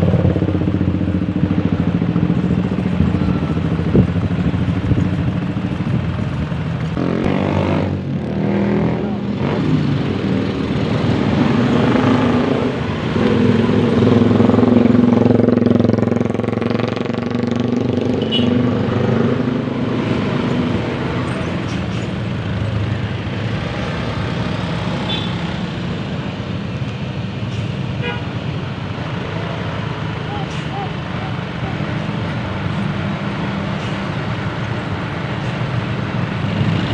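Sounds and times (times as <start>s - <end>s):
bus engine: 0.0s - 36.9s
traffic noise: 0.0s - 36.9s
bus musical horn: 18.2s - 18.7s, 28.0s - 28.3s.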